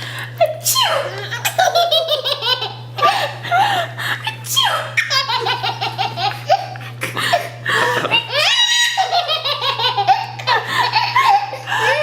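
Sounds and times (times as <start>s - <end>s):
baby laughing: 0.4s - 3.2s, 4.2s - 6.8s, 7.8s - 12.0s.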